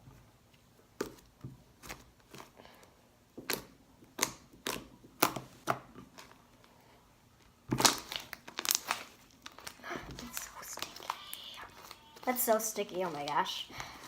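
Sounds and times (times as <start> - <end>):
slime clicking and popping: 3.4 - 6.2, 7.7 - 11.2.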